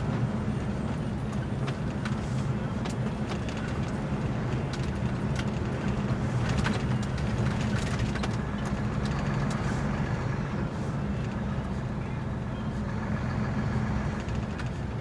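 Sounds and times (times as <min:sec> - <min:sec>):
road noise inside cab: 0:00.0 - 0:15.0
truck diesel engine drone: 0:05.2 - 0:15.0.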